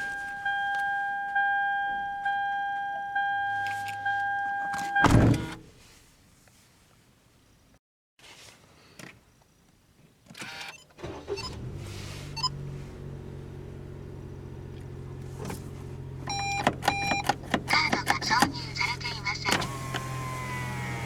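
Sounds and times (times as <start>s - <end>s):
dashboard warning chime beeping: 0.0s - 5.6s, 12.3s - 12.7s, 16.2s - 20.8s
car engine starting and idling: 11.0s - 21.0s.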